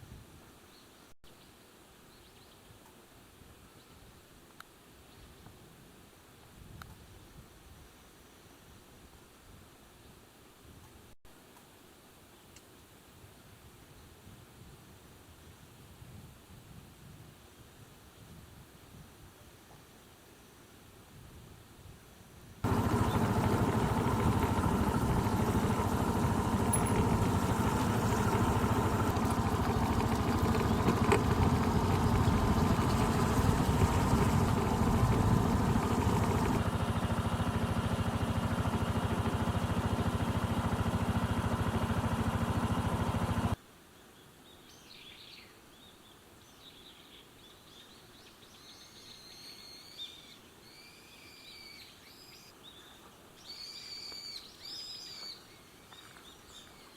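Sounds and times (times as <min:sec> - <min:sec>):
loud engine-like drone: 0:22.6 - 0:43.6.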